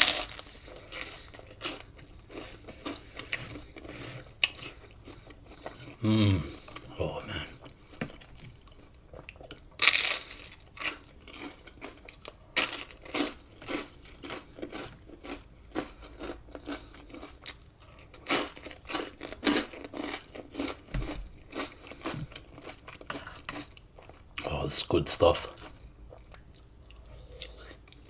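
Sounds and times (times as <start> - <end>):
close chewing mouth sounds: 0.0 - 24.5, 25.5 - 28.0.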